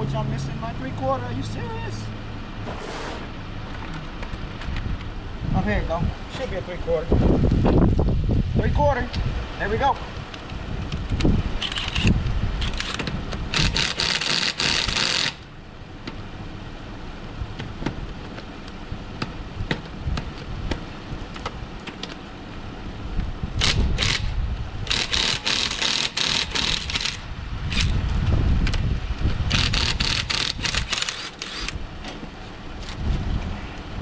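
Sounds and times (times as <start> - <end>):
vehicle engine rumble: 0.0 - 34.0
wind on microphone: 7.0 - 9.6, 10.5 - 14.0, 23.1 - 25.8, 26.4 - 32.1, 32.8 - 34.0
impact wrench hammering: 25.0 - 27.0.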